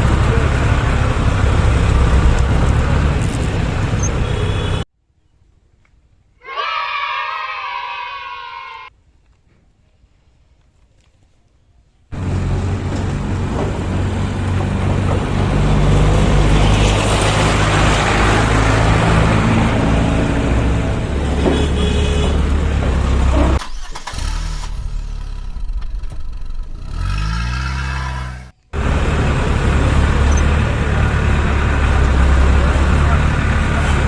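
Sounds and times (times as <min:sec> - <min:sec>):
vehicle engine running: 0:00.0 - 0:04.8, 0:12.2 - 0:34.0.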